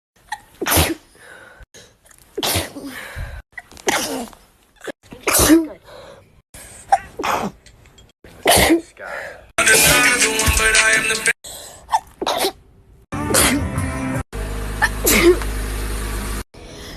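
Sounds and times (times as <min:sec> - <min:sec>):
woman sneezing: 0:05.2 - 0:05.8, 0:08.4 - 0:08.9, 0:13.3 - 0:13.7.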